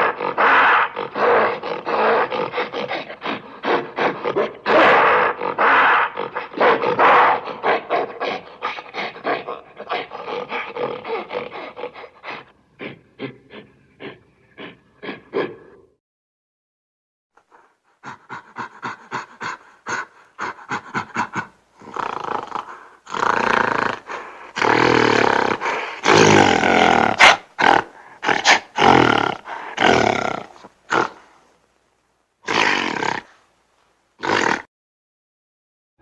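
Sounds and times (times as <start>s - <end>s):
gorilla calls and roars: 0.0s - 16.0s, 17.4s - 31.3s, 32.4s - 33.4s, 34.2s - 34.7s.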